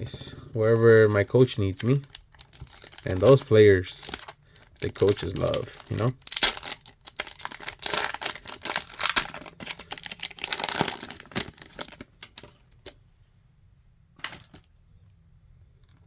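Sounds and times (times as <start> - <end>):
trading cards clicking and rustling: 0.0 - 12.6.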